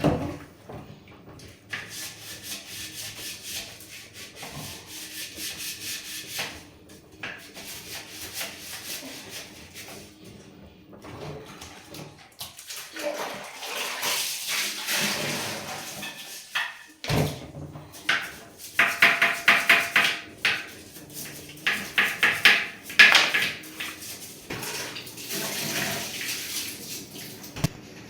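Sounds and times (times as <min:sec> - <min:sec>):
containers and utensils clattering: 0:11.0 - 0:27.7
water splashing: 0:12.5 - 0:16.7.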